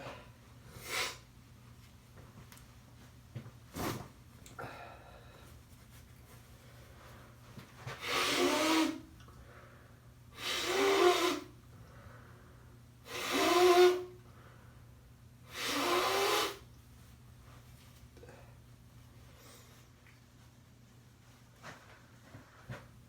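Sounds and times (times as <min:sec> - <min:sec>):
nose blowing into a tissue: 0:00.8 - 0:01.3, 0:07.9 - 0:09.1, 0:10.4 - 0:11.6, 0:13.0 - 0:14.1, 0:15.5 - 0:16.7.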